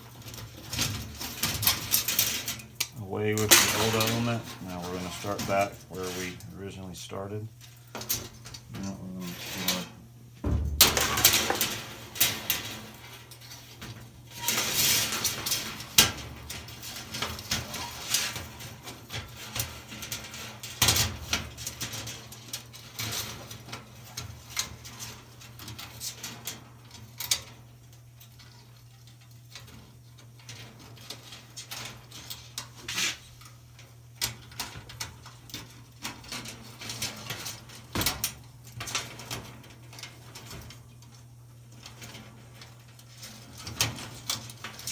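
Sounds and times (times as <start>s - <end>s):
steady low hum: 0.2s - 17.6s.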